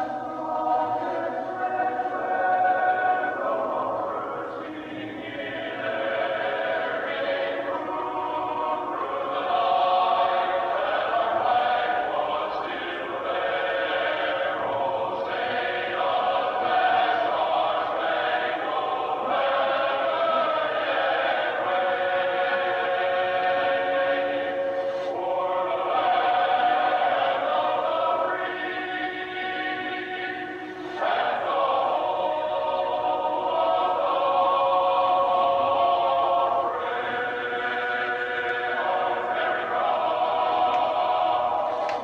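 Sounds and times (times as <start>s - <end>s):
choir singing an anthem: 0.0s - 42.0s.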